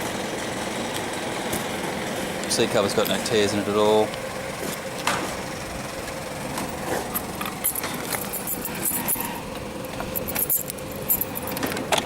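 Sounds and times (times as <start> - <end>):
keys jangling: 7.1 - 9.4, 10.0 - 12.0.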